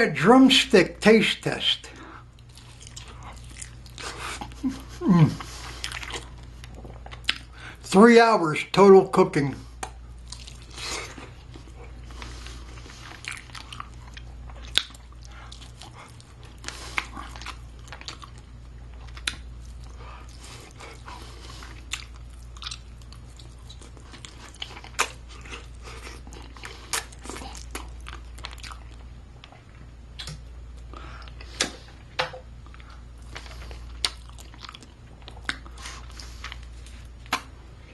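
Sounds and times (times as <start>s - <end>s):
person chewing: 1.6s - 7.8s, 9.8s - 37.9s
mouth and teeth clicks: 30.2s - 30.4s.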